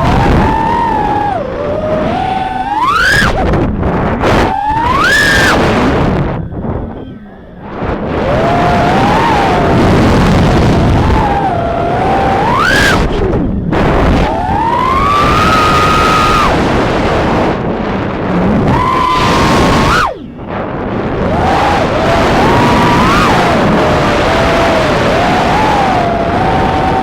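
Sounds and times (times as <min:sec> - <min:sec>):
quadcopter motors whining: 0:00.0 - 0:17.4, 0:18.6 - 0:20.5, 0:21.2 - 0:27.0
heavy rushing noise: 0:00.0 - 0:27.0.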